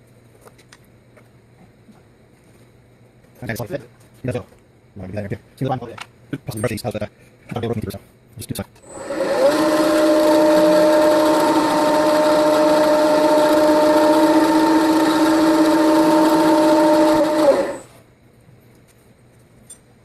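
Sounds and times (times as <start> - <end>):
milling machine whining: 8.8 - 18.0.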